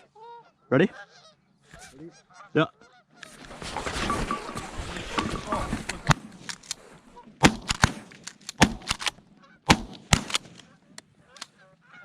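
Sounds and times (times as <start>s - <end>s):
geese honking: 0.0s - 7.4s, 9.3s - 9.7s, 10.5s - 12.0s
shotgun shots: 7.4s - 10.7s.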